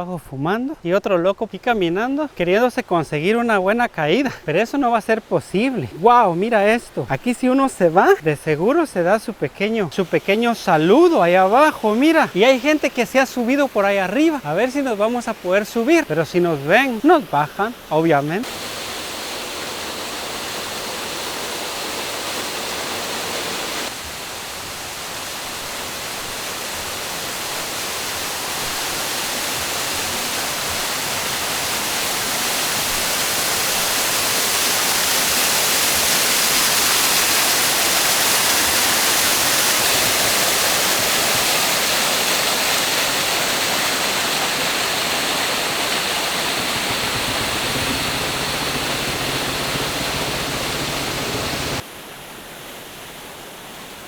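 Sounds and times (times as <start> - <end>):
waterfall rushing and splashing: 1.0 - 54.0.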